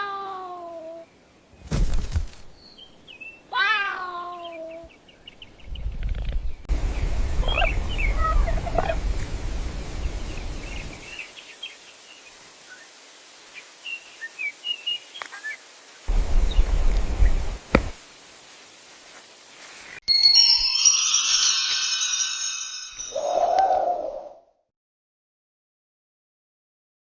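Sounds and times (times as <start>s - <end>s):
birds chirping: 2.4s - 9.1s, 9.8s - 17.7s
low rumbling noise: 5.8s - 11.1s, 16.1s - 18.0s.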